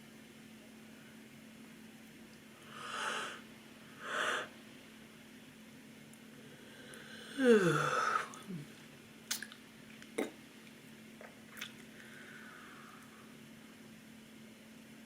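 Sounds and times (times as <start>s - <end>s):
woman yawning: 7.2s - 8.7s
tongue and lip clicks: 9.3s - 10.4s, 11.2s - 12.0s.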